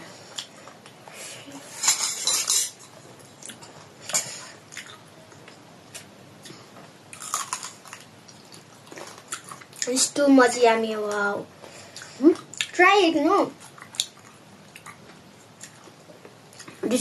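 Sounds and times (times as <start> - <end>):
utensils clinking and scraping dish: 1.7 - 3.0.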